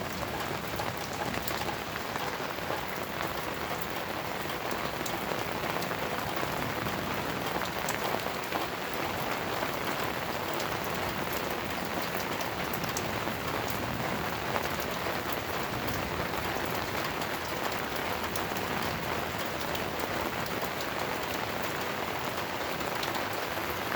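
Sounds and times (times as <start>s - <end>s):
rain hissing: 0.0s - 3.9s
raindrops ticking close by: 0.0s - 23.9s.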